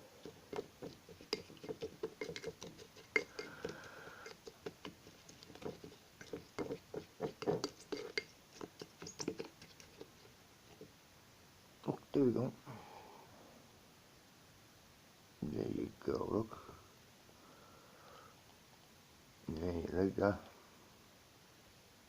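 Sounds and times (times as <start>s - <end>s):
bird pecking and scratching: 0.0s - 10.9s.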